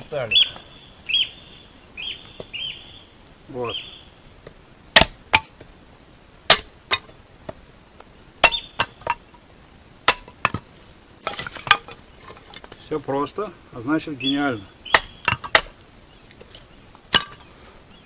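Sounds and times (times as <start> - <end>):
kindling being split: 10.1 - 12.9.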